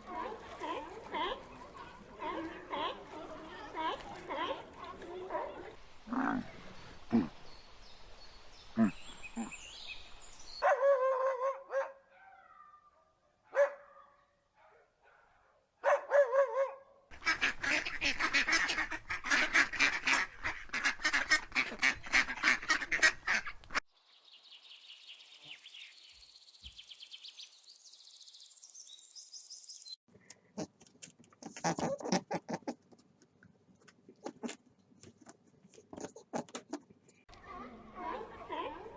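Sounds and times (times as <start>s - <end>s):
faint high-pitched chirping: 23.9s - 30.0s.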